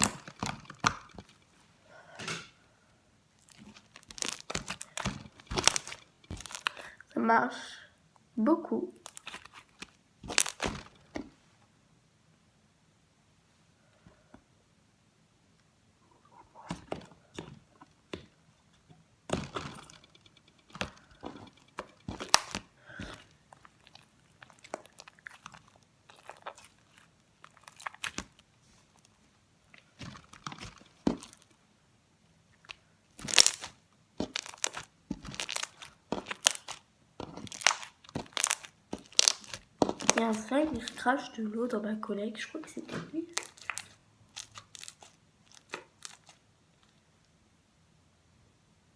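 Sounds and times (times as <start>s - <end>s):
slime crackling and popping: 0.0s - 1.4s, 3.4s - 7.0s, 9.0s - 11.3s, 19.3s - 29.2s, 29.8s - 31.6s, 32.6s - 41.3s, 43.2s - 46.5s.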